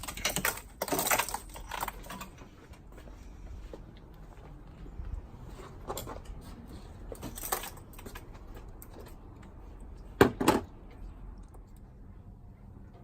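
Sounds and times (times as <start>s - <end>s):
plastic connectors clicking and rattling: 0.0s - 2.4s.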